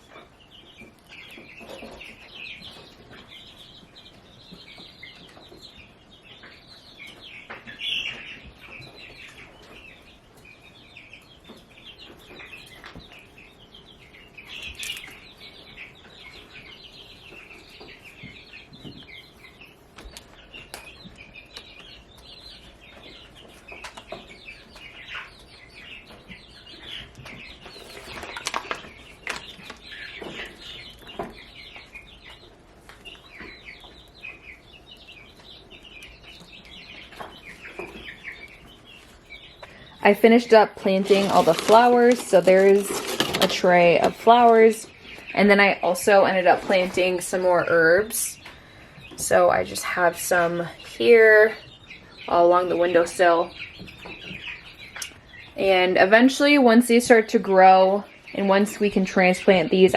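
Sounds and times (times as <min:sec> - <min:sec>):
baby chicks peeping: 0:00.0 - 0:59.9
knocks and rustles: 0:40.8 - 0:44.6.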